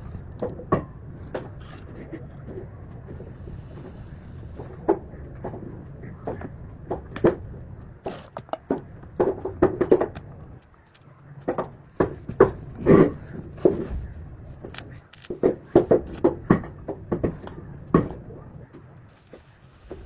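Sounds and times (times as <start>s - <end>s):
objects being handled: 9.9s - 16.2s.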